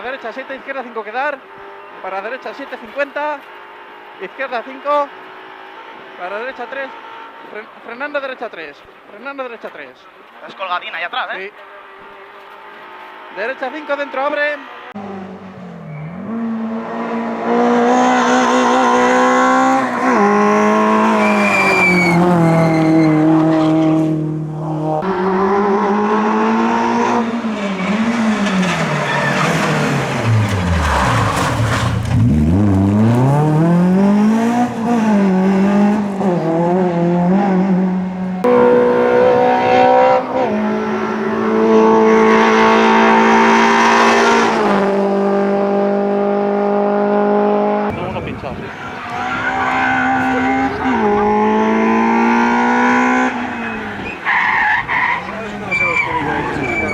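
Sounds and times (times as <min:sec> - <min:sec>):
rally car engine revving: 0:11.8 - 0:56.9
tyre squeal: 0:15.8 - 0:16.3, 0:21.0 - 0:23.8, 0:27.2 - 0:32.3, 0:47.9 - 0:51.2, 0:53.1 - 0:56.9.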